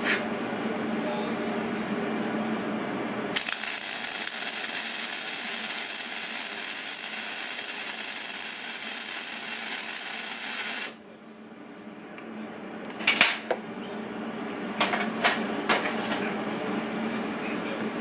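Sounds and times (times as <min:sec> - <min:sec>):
welding arc crackling hiss: 0:03.4 - 0:11.0.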